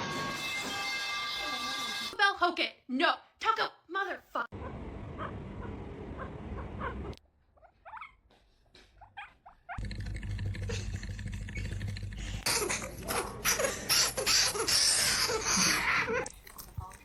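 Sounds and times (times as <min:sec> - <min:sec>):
low background rumble: 0:04.6 - 0:07.2
hamster squeaking: 0:04.6 - 0:08.2, 0:09.0 - 0:09.8.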